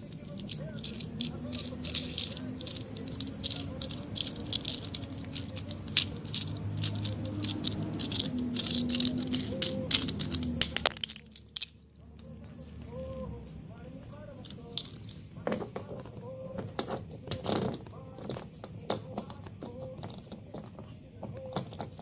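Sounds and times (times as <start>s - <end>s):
steady low hum: 0.0s - 15.5s
plastic dent puller clicking and rattling: 0.4s - 11.2s.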